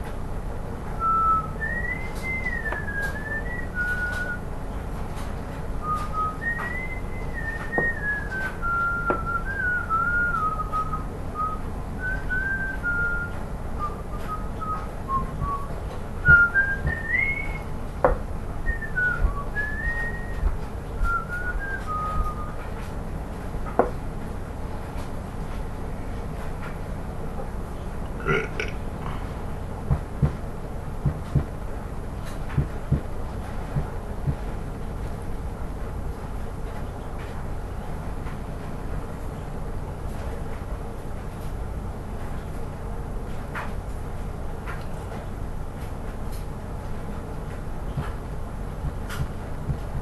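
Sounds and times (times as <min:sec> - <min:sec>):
person whistling a tune: 0:01.0 - 0:04.4, 0:05.8 - 0:17.7, 0:18.6 - 0:22.6.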